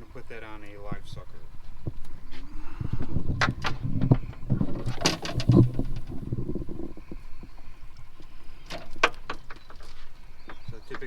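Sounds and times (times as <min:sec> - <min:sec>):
low rumble: 0:02.6 - 0:08.2
handling clicks and knocks: 0:03.4 - 0:06.6, 0:08.7 - 0:11.0.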